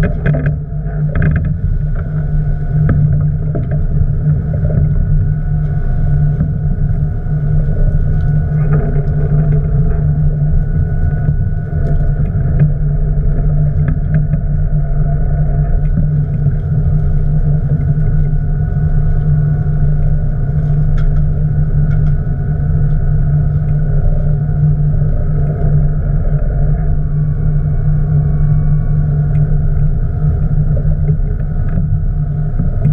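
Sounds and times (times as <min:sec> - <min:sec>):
boat engine running: 0:00.0 - 0:32.9
faint clicks: 0:19.9 - 0:22.2.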